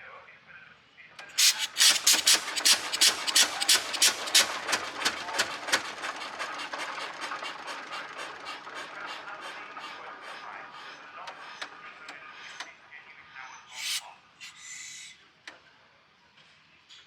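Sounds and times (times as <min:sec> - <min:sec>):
twin-cylinder engine running: 0:01.3 - 0:12.9.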